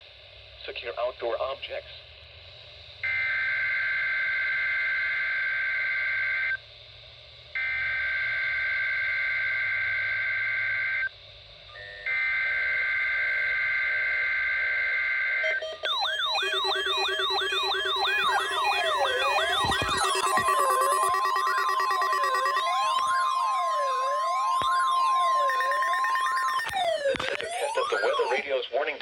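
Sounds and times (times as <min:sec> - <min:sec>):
digital data tones: 0:15.4 - 0:28.6
siren-like alarm tone sweeping: 0:15.4 - 0:28.6.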